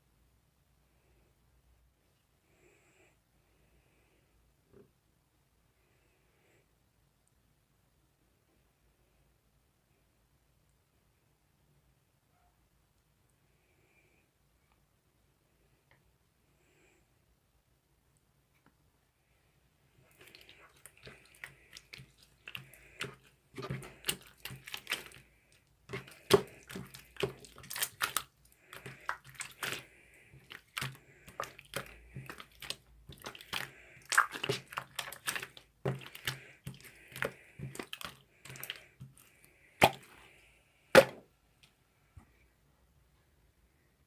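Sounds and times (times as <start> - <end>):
slime squished by hand: 20.0 - 40.2.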